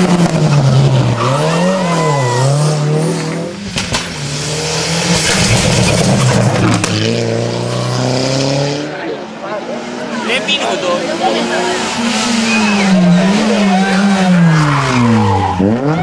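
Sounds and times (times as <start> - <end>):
rally car engine revving: 0.0 - 16.0
sharp cracks: 3.7 - 4.2.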